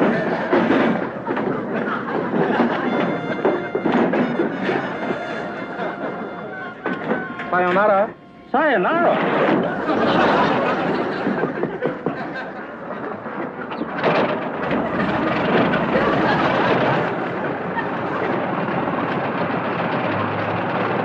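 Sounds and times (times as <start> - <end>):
propeller aircraft engine: 14.8 - 21.0.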